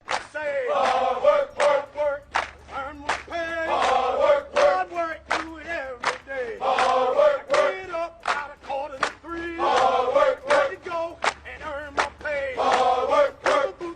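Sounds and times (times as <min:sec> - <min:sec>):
chanted group vocals: 0:00.1 - 0:13.9.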